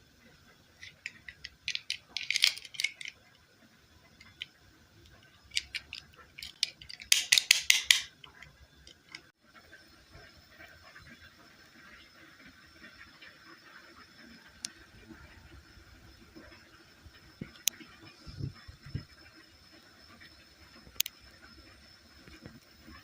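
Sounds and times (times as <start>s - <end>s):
plastic toy pieces clicking: 0.8s - 3.2s, 4.2s - 4.5s, 5.5s - 9.3s.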